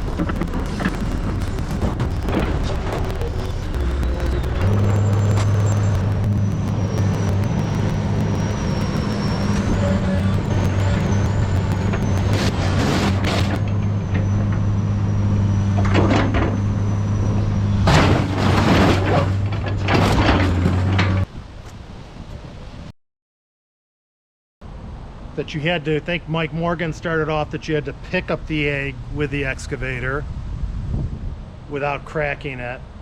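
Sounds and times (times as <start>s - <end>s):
diesel engine droning: 0.0s - 21.3s.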